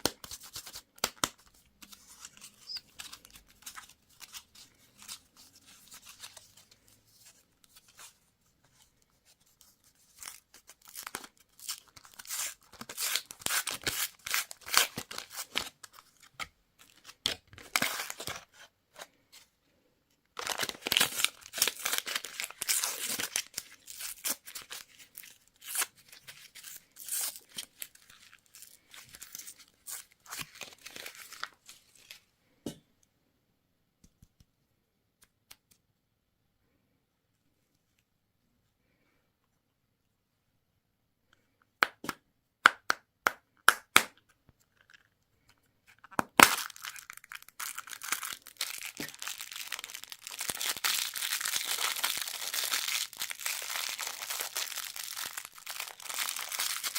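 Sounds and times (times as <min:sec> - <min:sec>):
plastic packaging crinkling and tearing: 0:10.1 - 0:16.3, 0:20.4 - 0:32.2, 0:46.3 - 0:56.9.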